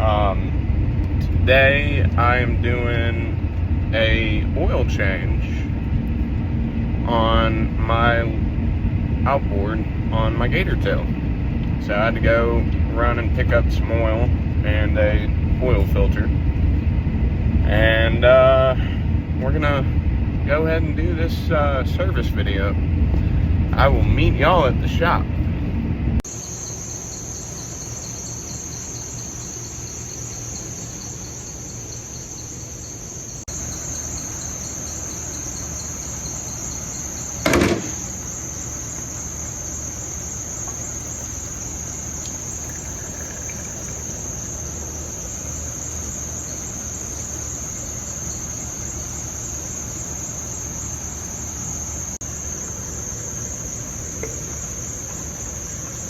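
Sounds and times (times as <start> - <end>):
insect chorus trilling: 0.0 - 25.3, 26.2 - 56.0
low background rumble: 0.0 - 56.0
loud knock: 37.4 - 38.1.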